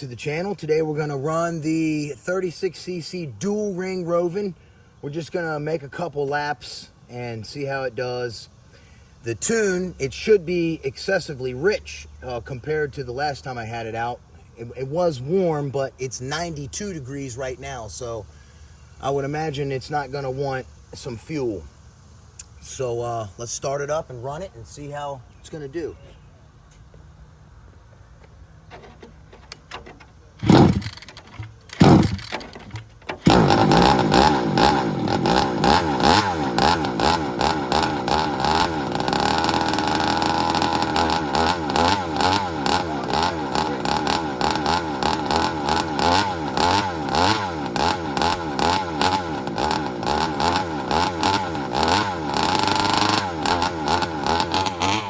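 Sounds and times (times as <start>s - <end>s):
engine sputtering and revving: 30.4s - 55.0s.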